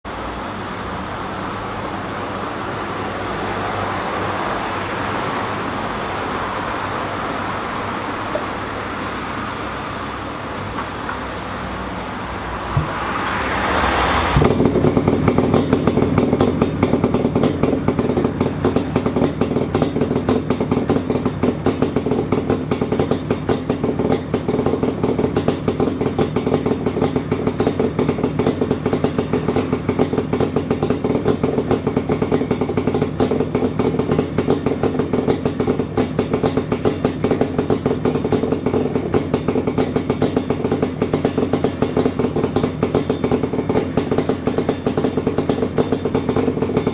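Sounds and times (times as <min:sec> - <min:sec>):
two-stroke engine starting and idling: 0:00.1 - 0:46.9.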